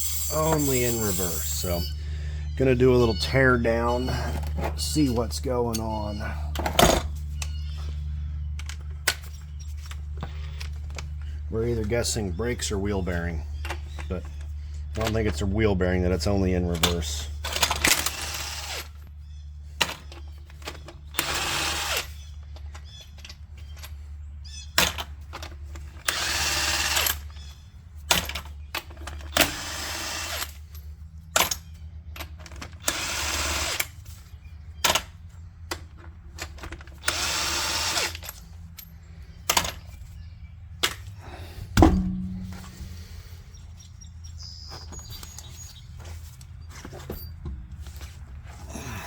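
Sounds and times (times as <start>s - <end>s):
handheld power tool running: 0.0s - 1.9s, 37.0s - 38.2s
steady low hum: 0.0s - 15.0s, 40.3s - 44.3s
tools and parts clattering: 4.1s - 7.6s, 27.0s - 29.5s, 30.4s - 32.9s, 34.2s - 37.2s, 40.8s - 43.6s, 44.8s - 48.7s
loud knock: 41.8s - 43.0s.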